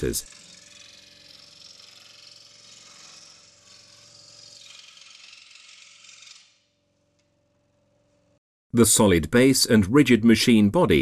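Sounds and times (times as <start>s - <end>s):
scroll saw cutting: 0.0s - 6.7s.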